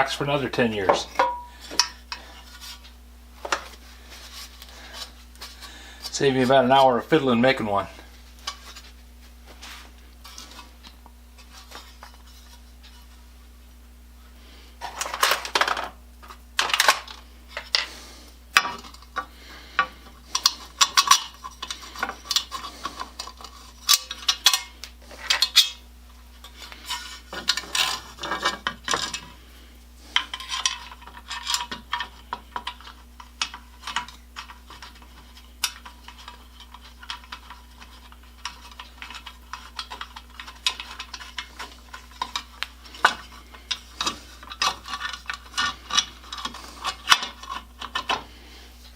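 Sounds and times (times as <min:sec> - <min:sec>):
rummaging and scraping: 0:14.8 - 0:17.9, 0:26.4 - 0:29.4, 0:30.1 - 0:48.9.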